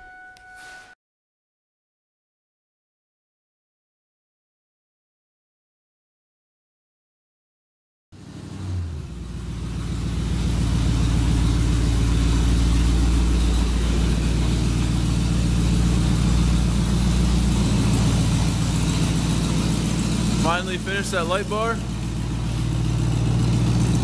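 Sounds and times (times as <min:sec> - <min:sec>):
pickup truck engine idling: 0:08.2 - 0:24.0.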